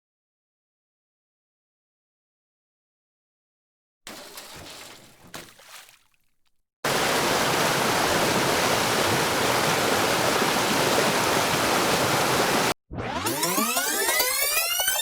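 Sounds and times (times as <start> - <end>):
fast-flowing river water: 6.9 - 12.7.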